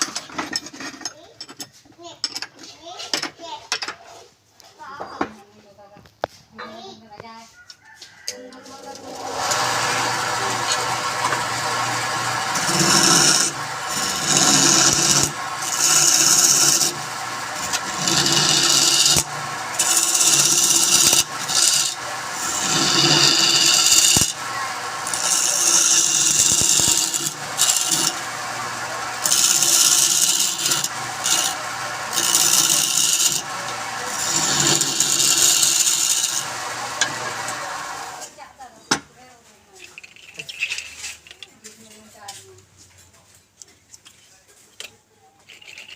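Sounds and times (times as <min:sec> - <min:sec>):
tool rasping on spinning wood: 0:08.7 - 0:38.3
wood lathe motor hum: 0:08.9 - 0:38.3.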